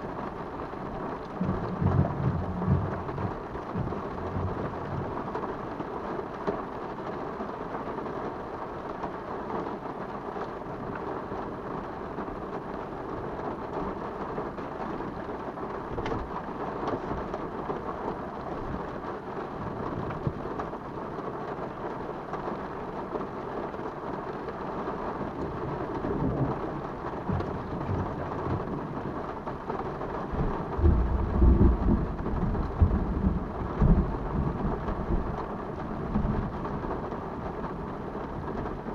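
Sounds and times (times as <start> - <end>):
steady rain falling: 0.0 - 38.9
thunder rumbling: 1.3 - 5.6, 25.4 - 38.9.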